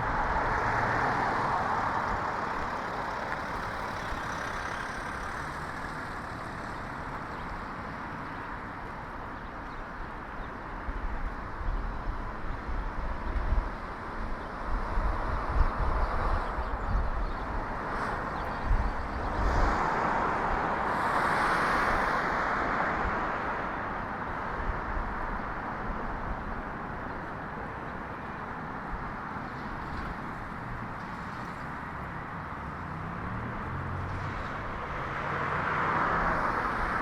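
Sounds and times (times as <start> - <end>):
car passing close by: 0.0 - 7.5, 17.7 - 24.7, 29.5 - 37.0
wind rumble on microphone: 9.6 - 27.5.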